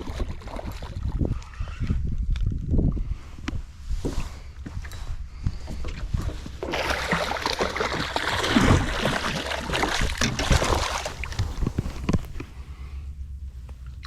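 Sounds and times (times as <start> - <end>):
water splashing and sloshing: 0.0 - 1.6, 4.8 - 12.6.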